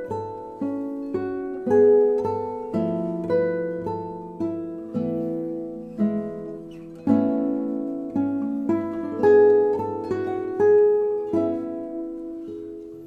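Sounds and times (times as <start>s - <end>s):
slow plucked string melody: 0.0s - 13.0s.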